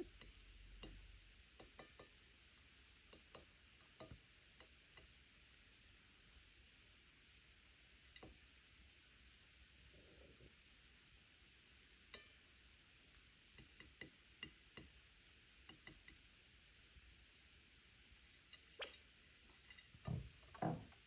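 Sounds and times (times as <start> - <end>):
bird beak tapping: 0.0 - 2.2.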